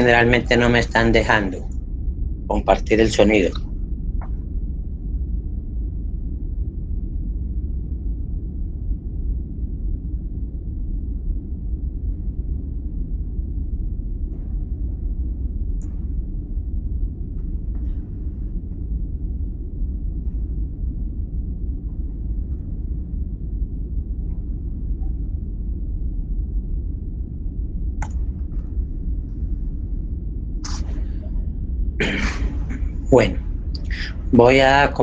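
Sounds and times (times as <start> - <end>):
low rumble of microphone noise: 0.0 - 35.0
faint clicks: 28.0 - 28.8.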